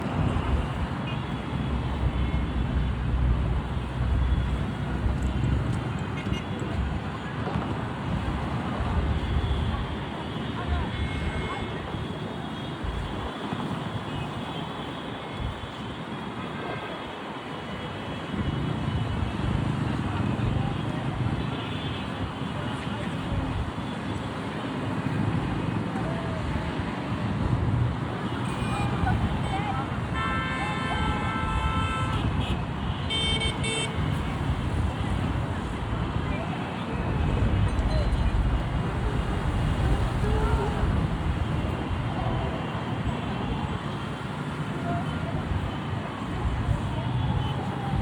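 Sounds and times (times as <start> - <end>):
traffic rumble: 0.0 - 48.0
car horns: 28.3 - 35.1.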